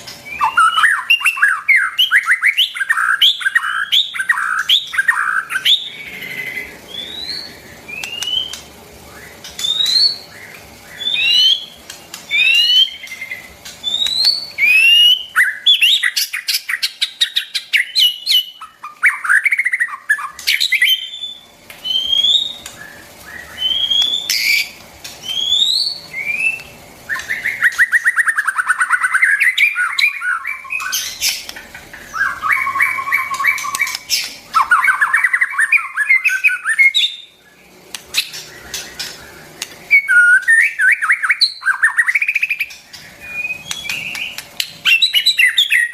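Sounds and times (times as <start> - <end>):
bird singing whistled notes: 0.2 - 31.4, 32.1 - 45.9.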